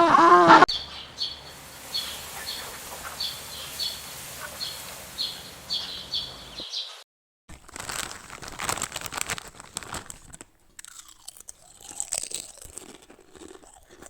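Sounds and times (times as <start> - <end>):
wavering animal call: 0.1 - 6.6
small bird chirping: 0.7 - 7.0.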